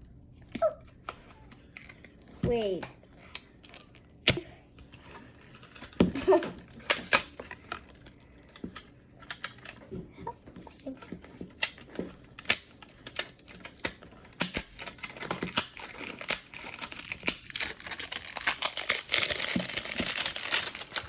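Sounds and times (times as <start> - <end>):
packaging crinkling: 3.2 - 9.8, 11.6 - 21.0
packaging clicks and taps: 11.0 - 21.0.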